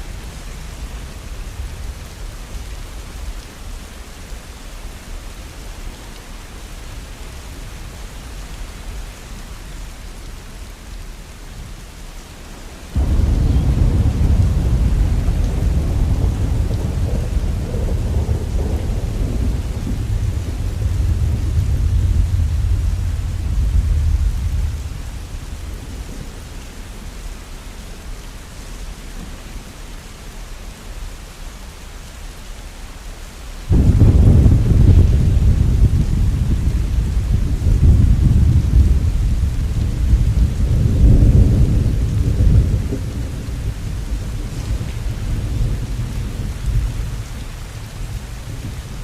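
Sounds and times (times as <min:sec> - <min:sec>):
steady rain falling: 0:00.0 - 0:49.0
low rumble of thunder: 0:12.9 - 0:27.4, 0:33.7 - 0:49.0.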